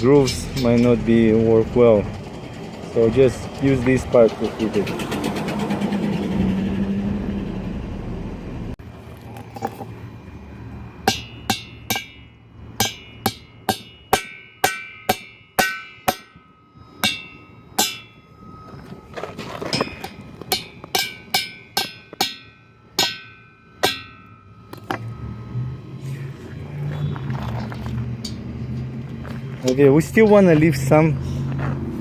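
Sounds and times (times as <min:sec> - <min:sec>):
hammer striking metal bolts: 0:11.0 - 0:18.2, 0:19.7 - 0:25.0.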